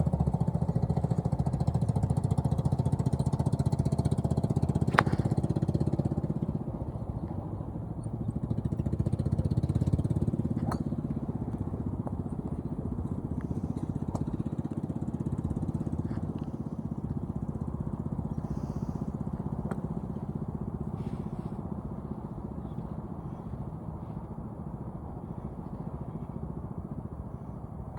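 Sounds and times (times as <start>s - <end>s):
small engine running: 0.0s - 27.8s.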